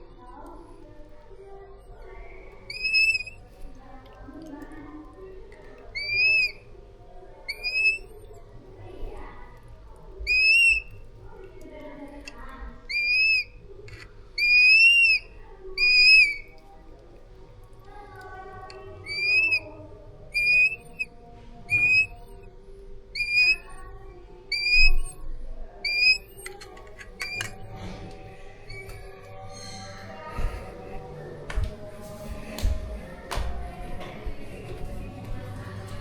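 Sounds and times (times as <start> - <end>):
bird chick whistled cries: 2.7 - 3.4, 5.9 - 6.6, 7.5 - 8.3, 10.2 - 11.0, 12.8 - 16.5, 19.0 - 19.7, 20.3 - 22.5, 23.1 - 23.9, 24.5 - 25.2, 25.8 - 27.6, 28.7 - 29.8.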